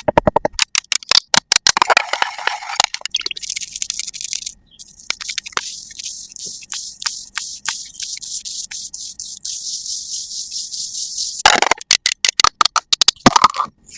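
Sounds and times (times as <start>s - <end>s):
sharp taps and clicks: 0.0s - 1.8s, 3.0s - 9.9s, 10.6s - 13.3s
high brushing hiss: 3.6s - 11.4s.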